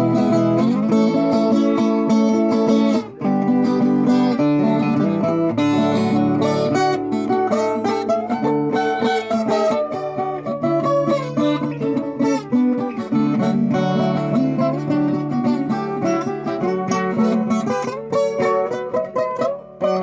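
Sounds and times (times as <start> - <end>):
plucked steel-string guitar melody: 0.0 - 20.0.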